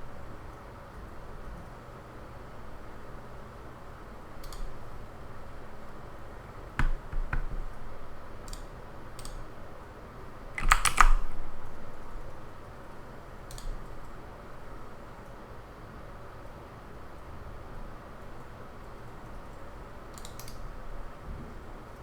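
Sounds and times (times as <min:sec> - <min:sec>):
steady low hiss: 0:00.0 - 0:22.0
keyboard and mouse clicks: 0:04.4 - 0:04.7, 0:06.8 - 0:07.8, 0:08.4 - 0:09.4, 0:10.6 - 0:11.4, 0:13.5 - 0:14.0, 0:20.1 - 0:20.6
burst of keystrokes: 0:10.6 - 0:11.7.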